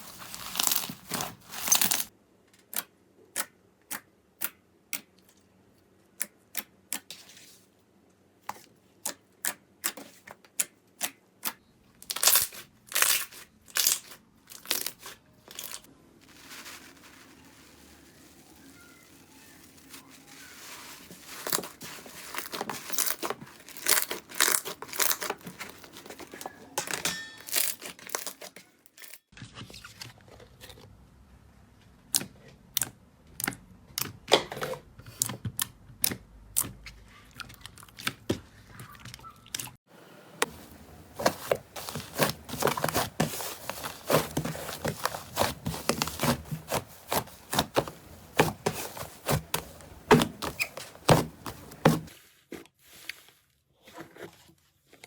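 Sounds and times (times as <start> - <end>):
slime crackling and popping: 12.0 - 15.9.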